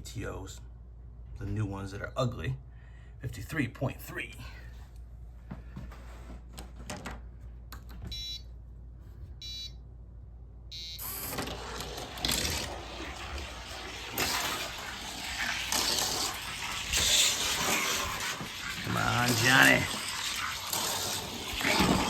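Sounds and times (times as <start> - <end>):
short electronic beeps: 8.1 - 8.4, 9.4 - 9.8, 10.7 - 11.2
toy car rattling down plastic track: 11.2 - 22.0.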